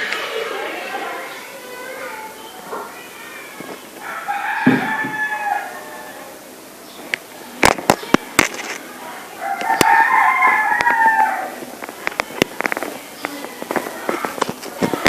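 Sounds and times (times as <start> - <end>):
rooster crowing: 4.0 - 6.4, 9.4 - 11.6.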